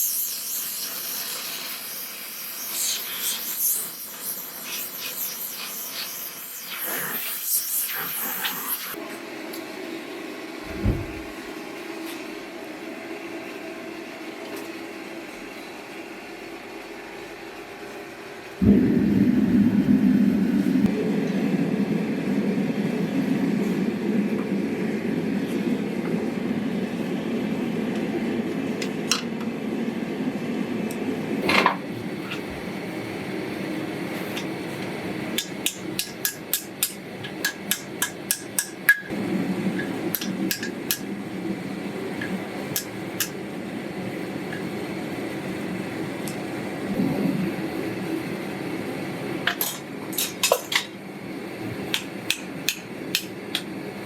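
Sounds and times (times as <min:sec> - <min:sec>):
steady low roar: 0:10.6 - 0:11.5, 0:18.6 - 0:27.4, 0:46.9 - 0:48.1.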